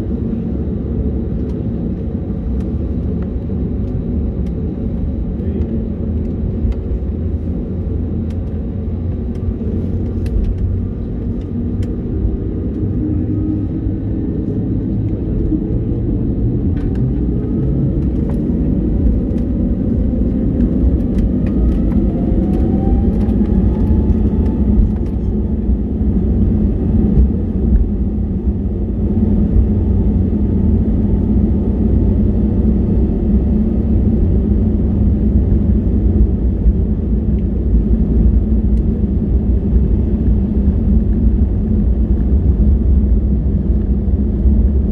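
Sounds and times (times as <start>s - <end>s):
airliner engines rumbling: 0.0s - 44.9s.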